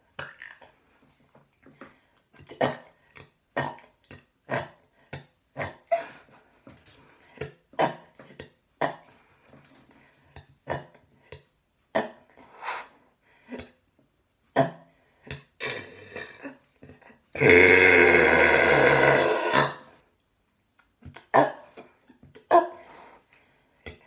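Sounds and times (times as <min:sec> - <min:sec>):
woman burping: 0:15.6 - 0:16.6, 0:17.4 - 0:20.0.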